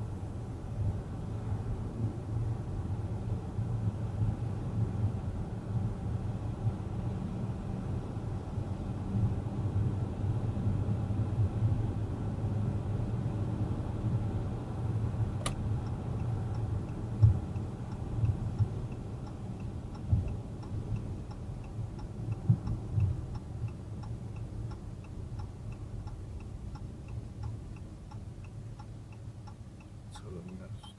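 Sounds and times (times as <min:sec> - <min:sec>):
road and engine rumble: 0:00.0 - 0:30.9
steady light ticking: 0:15.4 - 0:30.9.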